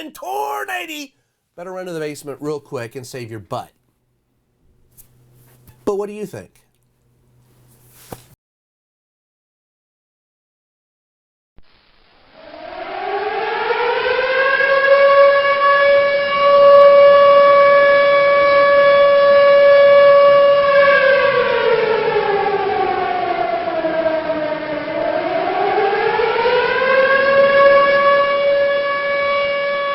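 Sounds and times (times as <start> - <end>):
tornado warning siren: 11.9 - 29.9.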